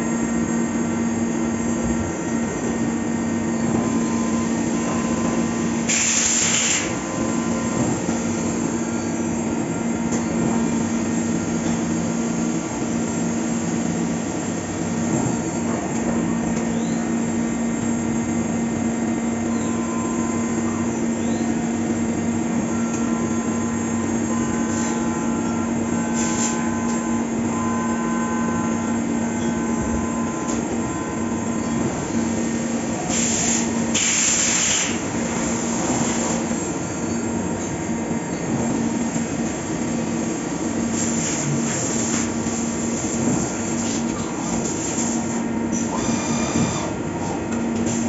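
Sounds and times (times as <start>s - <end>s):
milling machine spindle hum: 0.0s - 48.0s.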